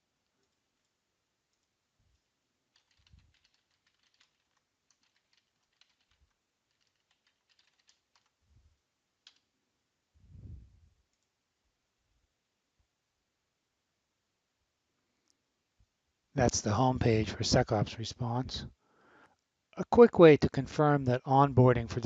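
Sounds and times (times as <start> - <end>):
typing on keyboard: 2.7 - 8.4, 9.2 - 9.5.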